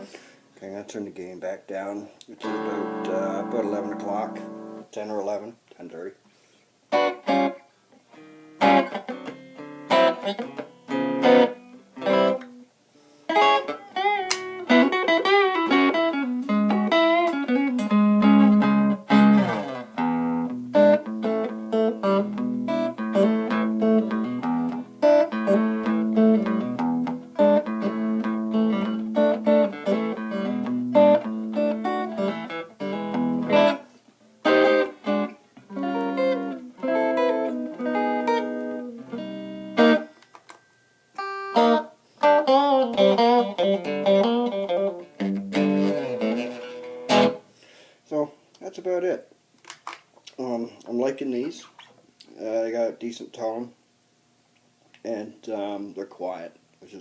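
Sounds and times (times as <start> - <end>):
overdriven electric guitar: 2.4 - 4.9, 6.9 - 47.5.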